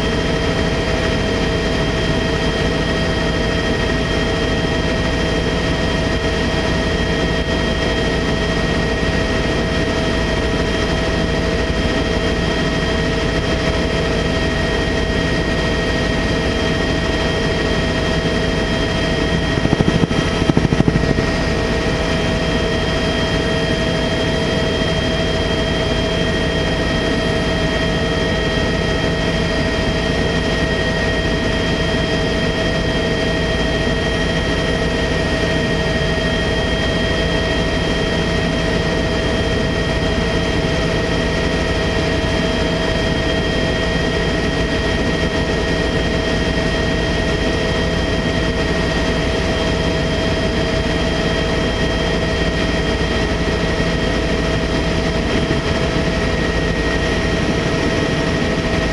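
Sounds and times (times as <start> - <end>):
helicopter rotor and turbine noise: 0.0 - 58.9
high whining tones: 18.9 - 22.1.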